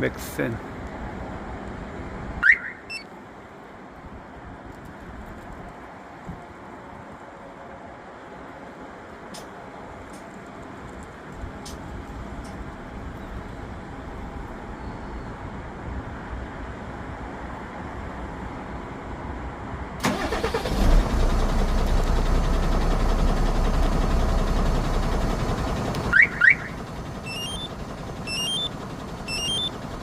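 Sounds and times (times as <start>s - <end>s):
short rising chirps: 2.4s - 3.1s, 26.4s - 29.8s
diesel engine cranking and idling: 20.0s - 30.0s.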